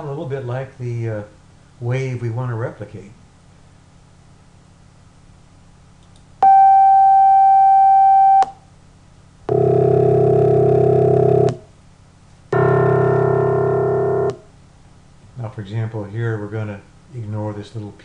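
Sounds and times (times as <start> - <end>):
chords of pure tones: 6.4 - 8.6, 9.5 - 11.6, 12.5 - 14.5
steady synthesised tone: 12.5 - 14.5.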